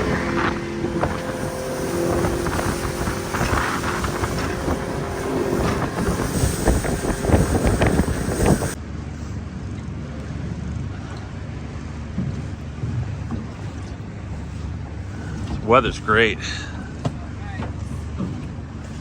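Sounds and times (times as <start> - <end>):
low rumble: 0.0 - 8.8
rushing water: 0.0 - 8.8
wind noise on microphone: 0.0 - 8.8
boat motor running: 0.0 - 19.0.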